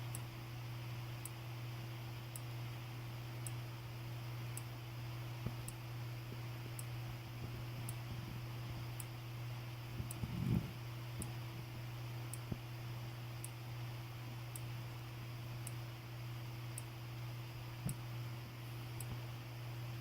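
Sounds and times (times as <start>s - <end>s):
steady low hum: 0.0s - 20.0s
strobe ticking faintly: 14.4s - 14.8s.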